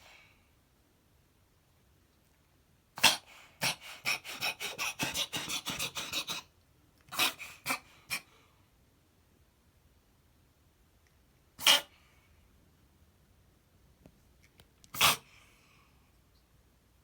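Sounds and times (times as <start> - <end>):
cat reverse sneezing: 7.1 - 8.4, 11.6 - 12.1, 14.9 - 15.4.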